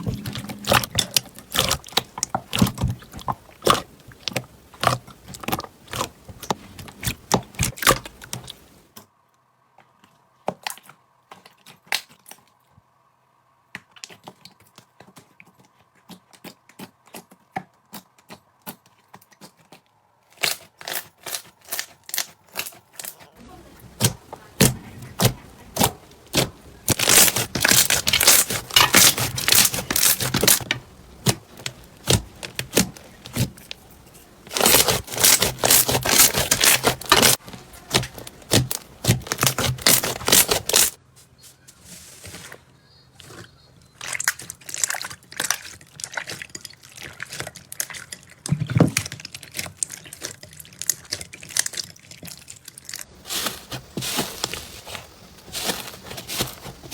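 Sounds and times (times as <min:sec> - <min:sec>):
slime crackling and popping: 0:00.0 - 0:08.8, 0:23.9 - 0:41.0, 0:44.0 - 0:56.9.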